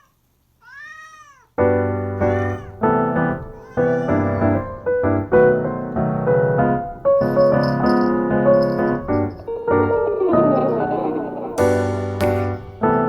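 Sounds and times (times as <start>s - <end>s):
cat meowing: 0.0s - 1.6s, 2.2s - 4.9s
piano background music: 1.6s - 13.0s.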